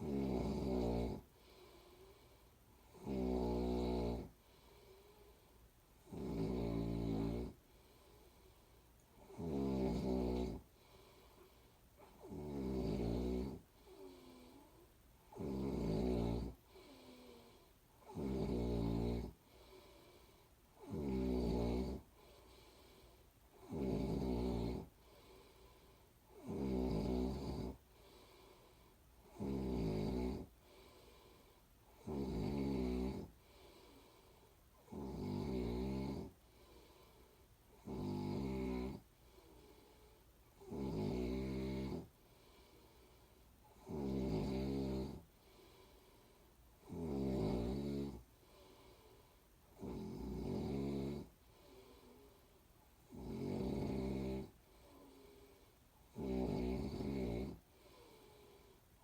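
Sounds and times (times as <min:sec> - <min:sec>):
person snoring: 0:00.0 - 0:05.3, 0:06.0 - 0:08.3, 0:09.2 - 0:28.6, 0:29.2 - 0:46.1, 0:46.8 - 0:52.4, 0:53.0 - 0:58.8
soft breathing: 0:01.0 - 0:03.0, 0:04.2 - 0:06.0, 0:06.8 - 0:09.5, 0:10.4 - 0:12.6, 0:13.3 - 0:15.3, 0:16.4 - 0:18.2, 0:19.2 - 0:20.8, 0:21.9 - 0:23.7, 0:24.8 - 0:26.5, 0:27.7 - 0:29.4, 0:30.4 - 0:32.1, 0:33.1 - 0:35.1, 0:36.2 - 0:37.9, 0:38.9 - 0:40.7, 0:41.9 - 0:43.9, 0:45.1 - 0:47.0, 0:47.8 - 0:50.4, 0:51.2 - 0:53.4, 0:54.4 - 0:56.2, 0:57.2 - 0:59.0.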